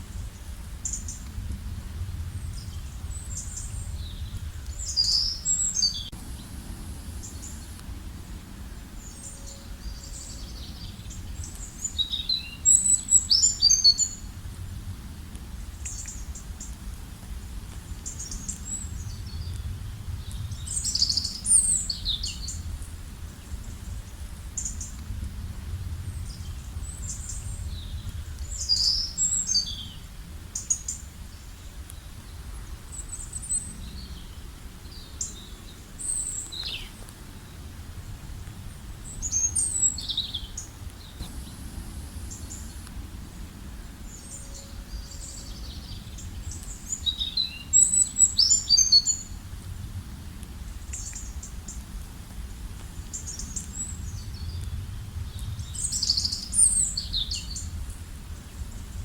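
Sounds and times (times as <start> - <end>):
low background rumble: 0.0 - 59.0
wild birds chirping: 2.3 - 14.8, 26.1 - 49.4.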